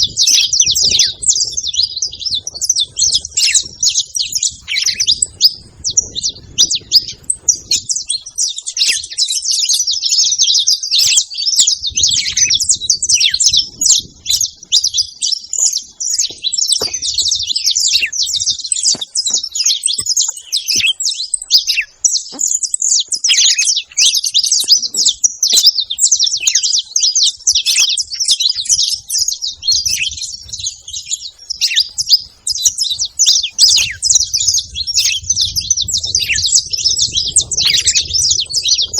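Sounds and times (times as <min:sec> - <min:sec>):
finches chirping and singing: 0:00.0 - 0:38.9.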